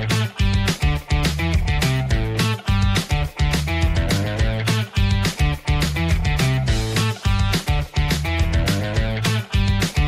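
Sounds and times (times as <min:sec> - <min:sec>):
upbeat guitar music: 0:00.0 - 0:10.0.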